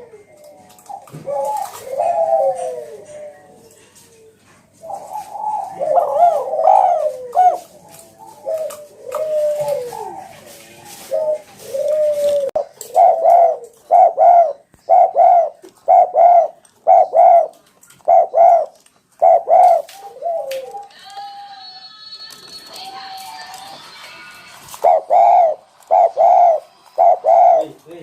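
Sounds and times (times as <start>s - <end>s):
dove cooing: 0.0s - 21.4s, 24.7s - 28.0s.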